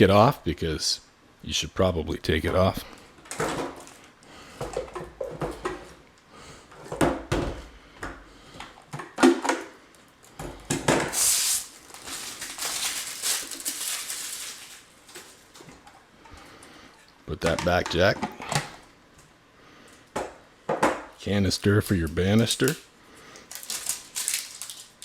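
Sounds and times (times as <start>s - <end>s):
plastic parts knocking and clattering: 2.5s - 4.0s, 4.6s - 6.0s, 6.7s - 9.8s, 10.4s - 11.2s
packaging rustling: 11.1s - 15.8s, 23.4s - 25.0s.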